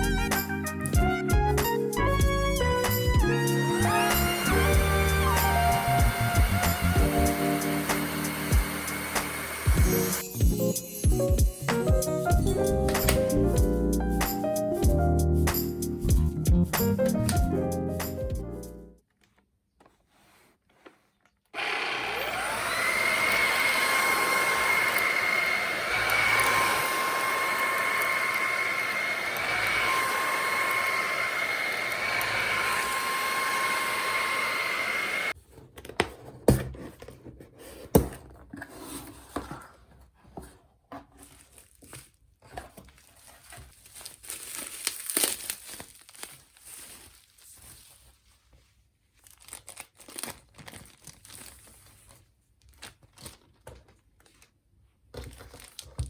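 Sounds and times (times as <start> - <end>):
vacuum cleaner high whine: 3.4 - 10.3, 21.6 - 35.4.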